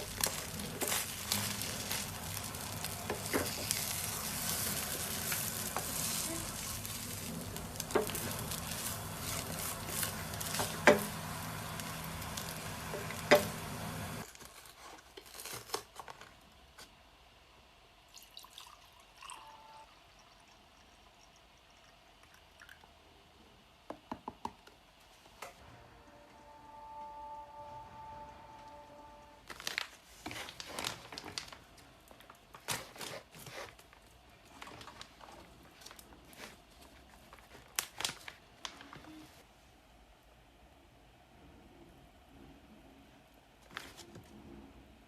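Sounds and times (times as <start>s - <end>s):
food sizzling in a frying pan: 0.0s - 14.3s.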